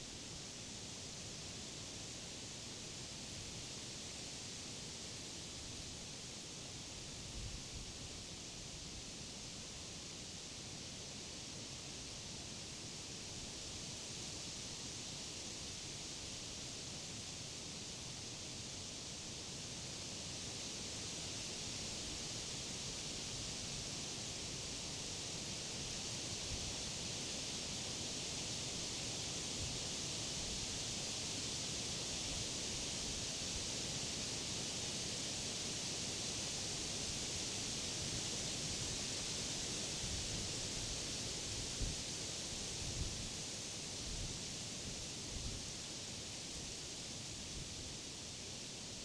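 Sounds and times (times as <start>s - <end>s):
wind rustling leaves: 30.4s - 48.8s.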